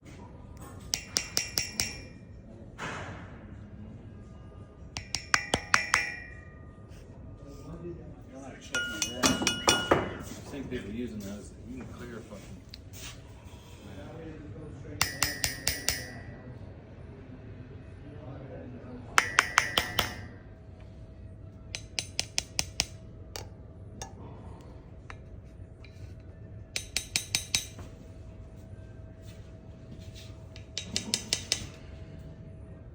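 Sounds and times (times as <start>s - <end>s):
sharp metallic taps: 0.9s - 2.2s, 5.0s - 6.5s, 15.0s - 16.2s, 19.2s - 20.4s, 21.7s - 23.5s, 26.8s - 27.9s, 30.6s - 31.8s
light metallic clinks: 8.8s - 10.0s.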